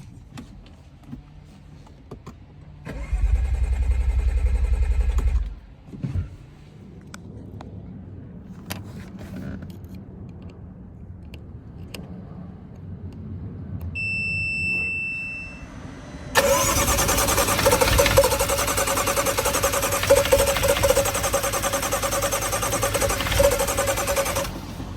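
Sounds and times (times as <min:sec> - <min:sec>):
starter motor cranking: 0:02.9 - 0:05.6, 0:16.4 - 0:24.9
electronic beep: 0:14.0 - 0:15.7.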